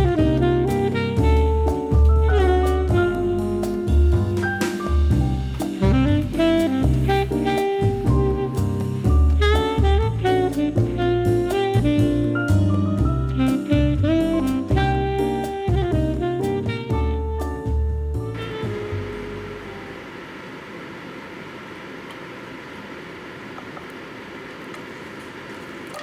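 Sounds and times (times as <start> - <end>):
jazz music with saxophone: 0.0 - 20.1.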